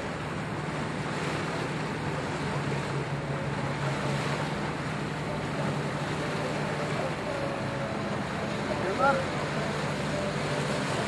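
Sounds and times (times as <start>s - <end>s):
low engine hum: 0.0s - 11.0s
wind and water rushing: 0.0s - 11.0s.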